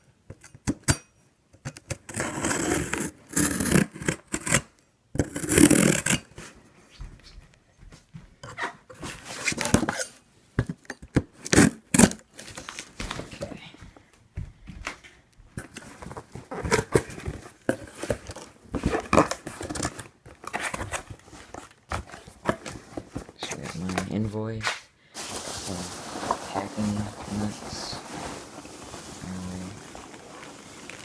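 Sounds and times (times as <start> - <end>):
cardboard and tape ripping: 1.9 - 6.3, 11.3 - 13.3, 15.6 - 24.1, 25.2 - 31.0.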